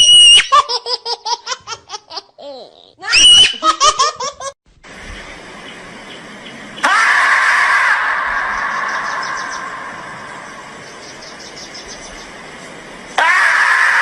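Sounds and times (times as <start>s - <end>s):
child squealing: 0.0s - 0.6s, 3.0s - 3.7s
small child laughing: 0.4s - 4.6s
steady background noise: 4.7s - 14.0s.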